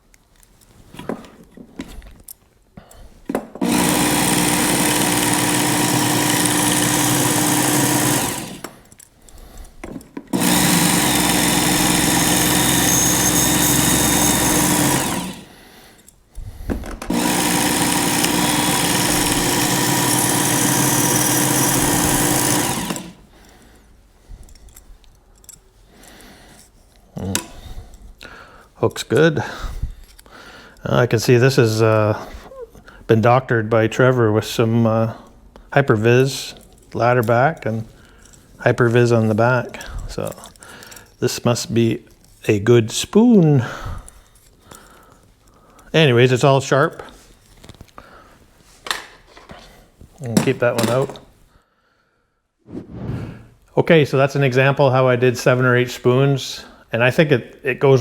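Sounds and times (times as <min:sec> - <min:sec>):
electric belt sharpener running: 0:03.6 - 0:08.8, 0:10.3 - 0:15.6, 0:17.1 - 0:23.3.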